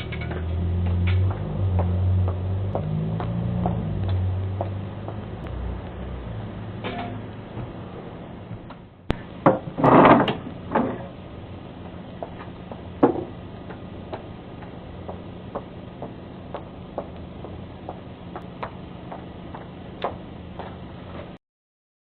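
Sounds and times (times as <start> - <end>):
low hum: 0.0 - 9.8.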